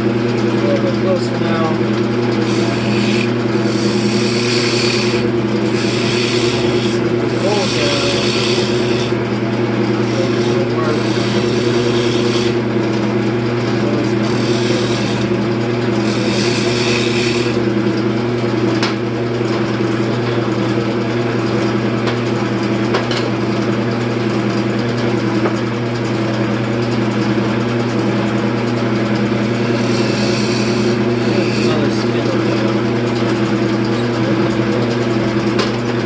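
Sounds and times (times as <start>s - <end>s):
wood lathe motor humming: 0.0s - 36.0s
turning tool scraping wood: 0.6s - 18.1s, 28.0s - 35.9s.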